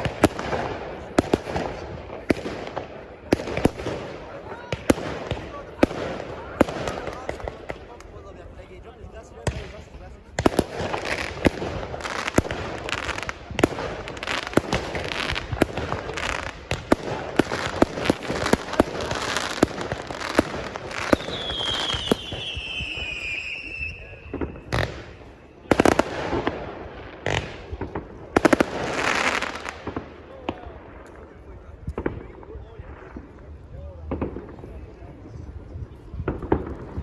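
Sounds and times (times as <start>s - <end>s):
fireworks bangs and crackles: 0.0s - 37.0s
falling firework whistle: 21.0s - 26.0s.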